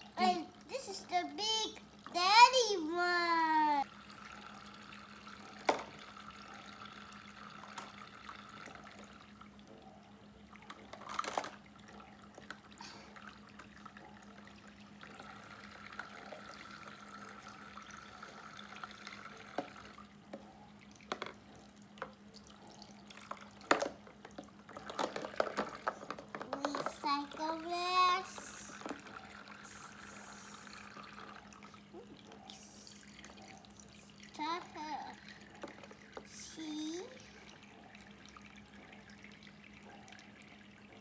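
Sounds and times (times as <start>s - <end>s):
water running from faucet: 0.0s - 9.6s, 11.6s - 20.2s, 26.5s - 41.0s
toys clicking and knocking: 23.6s - 29.0s.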